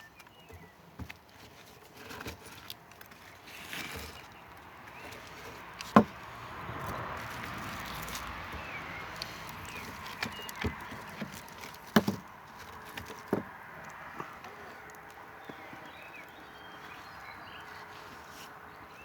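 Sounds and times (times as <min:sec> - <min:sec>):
campfire wood popping: 0:02.1 - 0:16.4.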